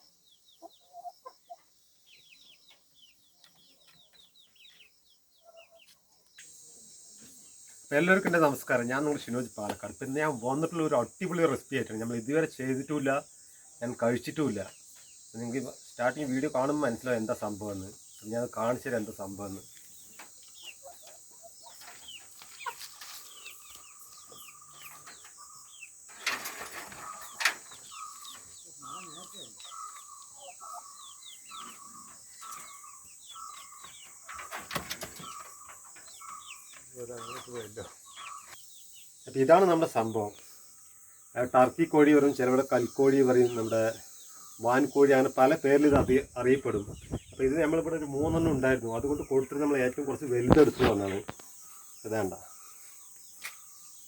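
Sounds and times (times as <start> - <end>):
chickens clucking and calling: 0.0 - 7.6, 15.4 - 41.0, 41.8 - 54.0
crickets trilling: 4.6 - 54.0
hen clucking: 18.9 - 38.6.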